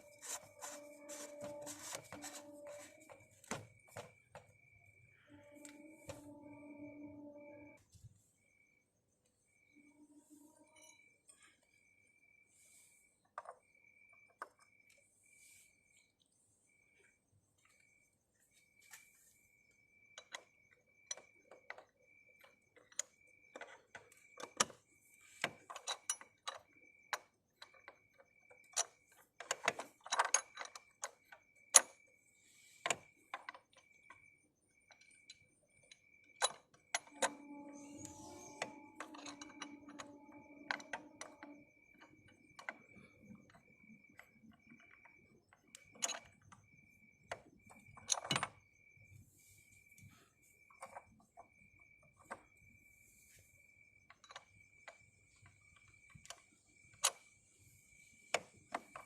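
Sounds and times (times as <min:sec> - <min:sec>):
tools and parts clinking: 0:00.0 - 0:07.8, 0:20.1 - 0:49.2, 0:50.0 - 0:52.8, 0:54.0 - 0:59.0
faint high beep: 0:05.2 - 0:07.8, 0:09.7 - 0:11.4, 0:37.1 - 0:41.7.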